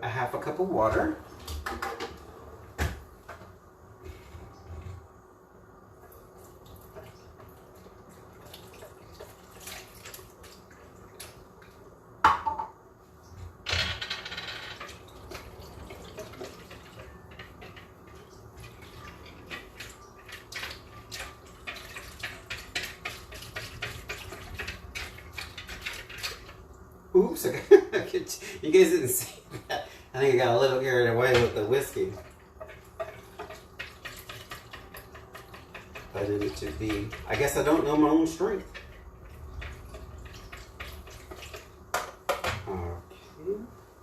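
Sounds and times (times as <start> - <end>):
kitchen tap running: 6.0 - 11.7, 13.8 - 42.6
whisk clicking against bowl: 19.5 - 26.6, 31.3 - 42.4.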